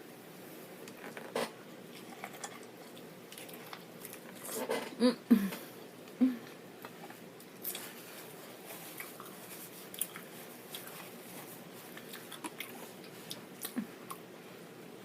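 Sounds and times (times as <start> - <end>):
person chewing corn: 0.9 - 4.8, 6.8 - 14.3
person humming: 5.0 - 5.6, 6.2 - 6.6.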